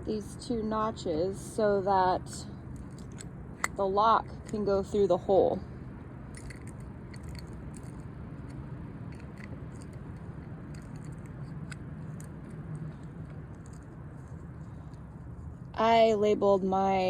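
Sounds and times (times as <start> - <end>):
low background hum: 0.0 - 17.0
small metal clicks and scrapes: 2.3 - 5.0, 6.3 - 15.6.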